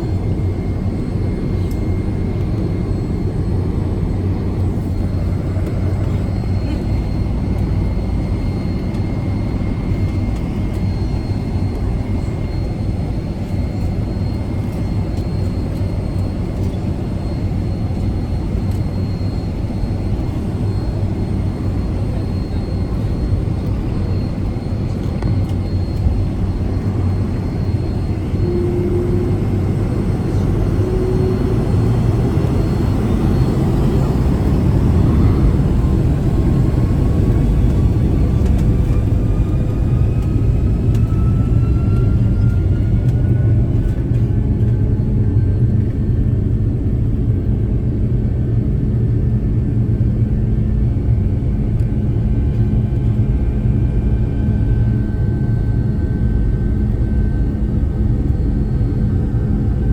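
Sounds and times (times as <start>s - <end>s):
faint steady whines: 0.0s - 59.9s
jet engine cabin rumble: 0.0s - 59.9s
rising whine: 23.0s - 46.4s.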